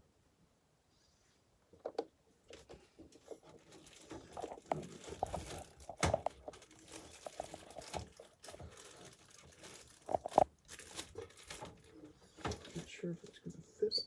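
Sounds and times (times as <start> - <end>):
plastic crinkling: 2.5 - 13.0.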